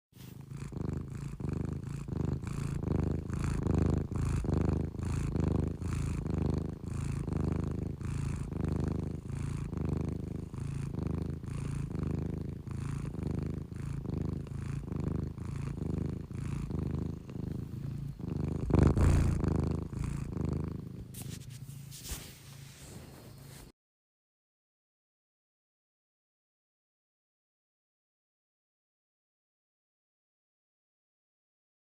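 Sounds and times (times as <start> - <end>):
cat snore-purring: 0.2 - 23.7.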